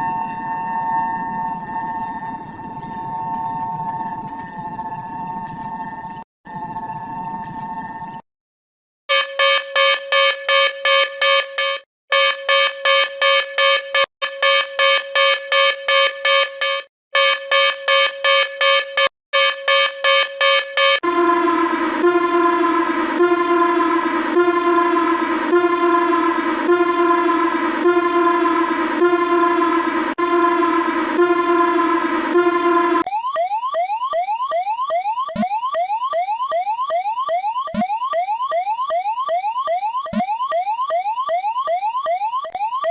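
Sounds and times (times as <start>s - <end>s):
siren-like tone with falling sweeps: 0.0s - 8.2s, 19.7s - 42.9s
rapid buzzy alarm beeping: 9.1s - 42.9s.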